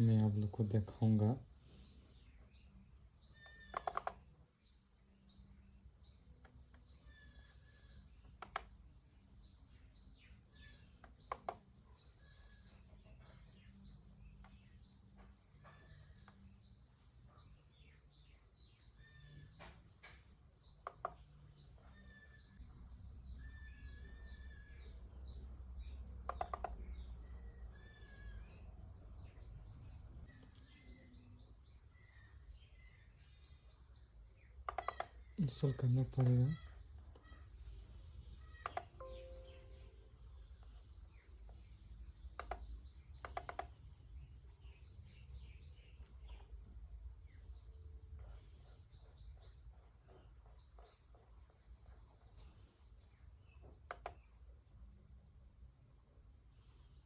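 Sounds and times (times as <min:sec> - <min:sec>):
small birds chirping: 0:00.0 - 0:57.0
sharp clicks: 0:03.5 - 0:04.3, 0:08.3 - 0:08.8, 0:11.0 - 0:11.6, 0:26.2 - 0:26.9, 0:34.6 - 0:35.3, 0:42.3 - 0:43.8.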